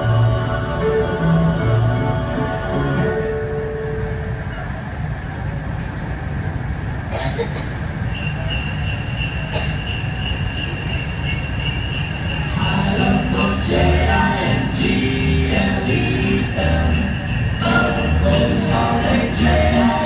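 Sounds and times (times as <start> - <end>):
sleigh bells over loudspeakers: 7.2 - 20.0
music with pitched instruments: 8.2 - 20.0
steady low rumble: 10.1 - 20.0.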